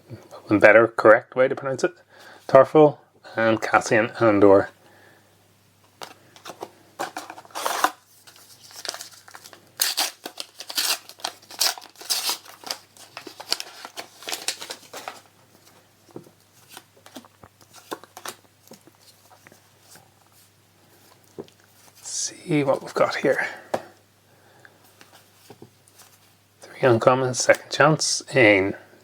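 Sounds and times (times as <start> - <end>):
wrapper rustles and clicks: 6.4 - 15.8
foil wrapper tearing and crinkling: 7.0 - 15.3.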